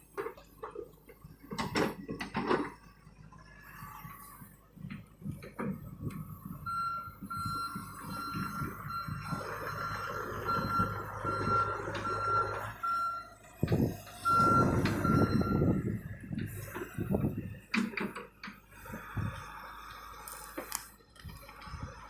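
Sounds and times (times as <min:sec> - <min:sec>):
diesel engine running: 0:00.0 - 0:22.0
back-up alarm beeping: 0:06.3 - 0:16.0.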